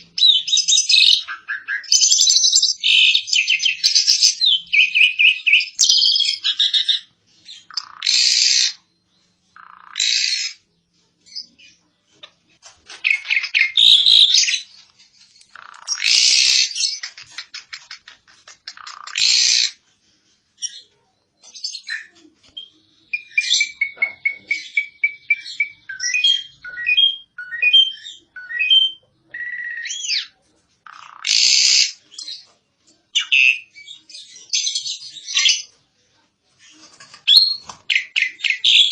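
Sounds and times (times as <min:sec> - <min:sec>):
starling singing harsh calls: 0:00.0 - 0:08.9, 0:09.6 - 0:10.7, 0:13.0 - 0:14.8, 0:15.4 - 0:19.8, 0:21.6 - 0:32.4, 0:37.3 - 0:38.9.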